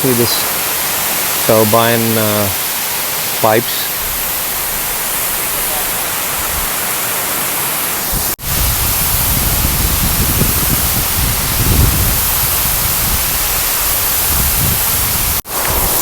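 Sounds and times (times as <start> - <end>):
waterfall roaring: 0.0 - 16.0.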